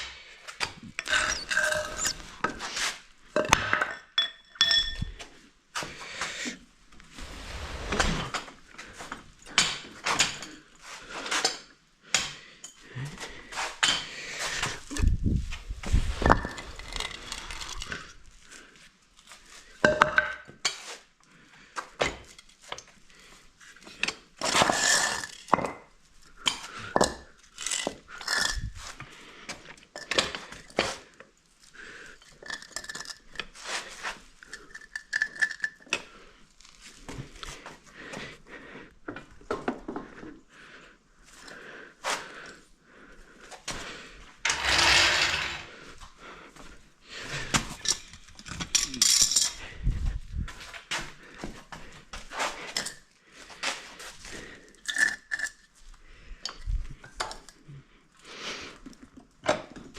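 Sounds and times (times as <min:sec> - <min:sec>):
rattling scrape: 0:01.0 - 0:02.9, 0:44.4 - 0:45.8
metallic clinks of hand tools: 0:04.2 - 0:05.2.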